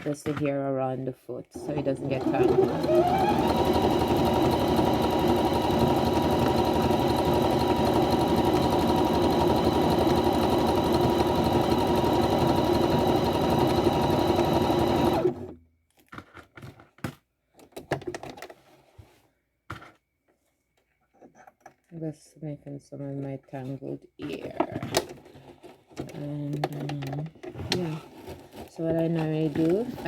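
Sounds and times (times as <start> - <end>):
sewing machine running: 1.6 - 15.5.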